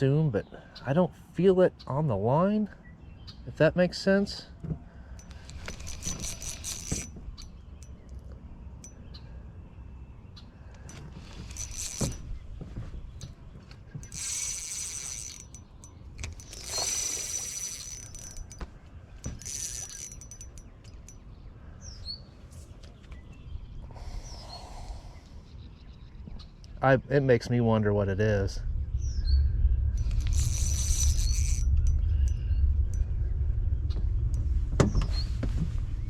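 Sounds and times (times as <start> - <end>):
low wind rumble: 0.0 - 36.0
fishing reel clicking and whining: 5.2 - 8.3, 10.8 - 12.3, 14.0 - 21.2, 30.0 - 33.0.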